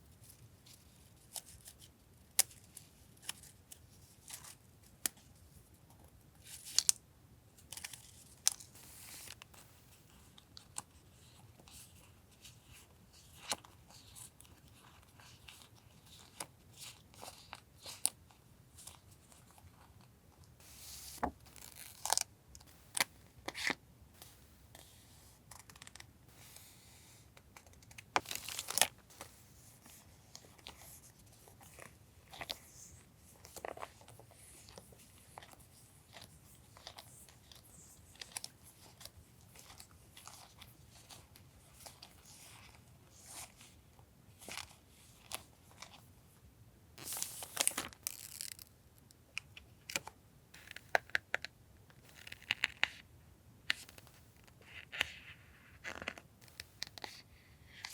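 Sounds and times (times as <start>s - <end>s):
packaging crackling and tearing: 21.5s - 22.2s.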